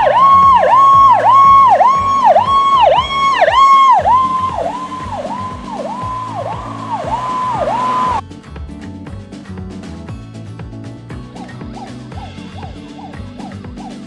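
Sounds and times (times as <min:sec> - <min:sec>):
toy electronic siren: 0:00.0 - 0:08.2
background music: 0:00.0 - 0:14.0.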